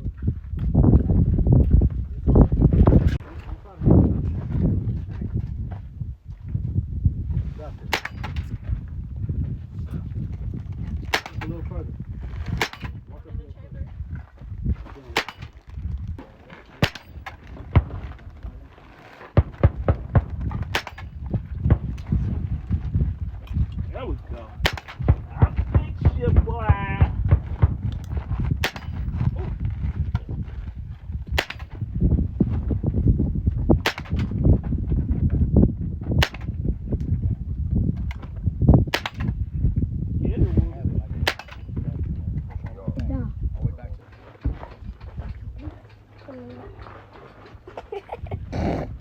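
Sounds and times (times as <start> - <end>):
gunshots: 12.6 - 13.0, 15.2 - 15.5, 16.8 - 18.0, 19.4 - 22.0, 24.6 - 26.4, 28.6 - 29.0, 31.4 - 31.8
steady low rumble: 19.4 - 49.0.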